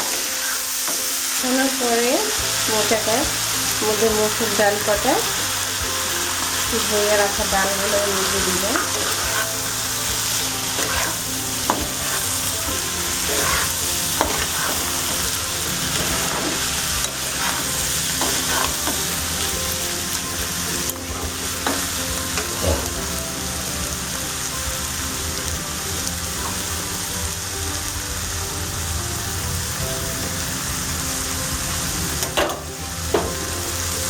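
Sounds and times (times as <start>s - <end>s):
food sizzling in a pan: 0.0s - 34.0s
spatula scraping and knocking pan: 2.4s - 23.5s.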